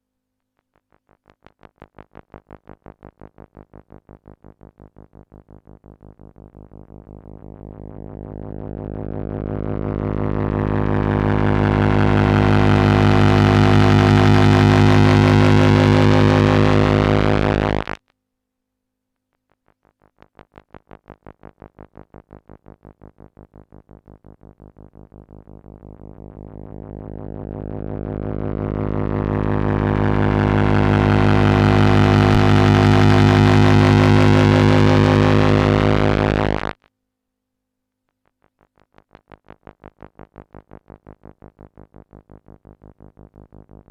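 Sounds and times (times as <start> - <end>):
sustained electronic drone chord: 4.4 - 18.0, 22.1 - 36.7
faint pulsing notes: 24.2 - 36.6.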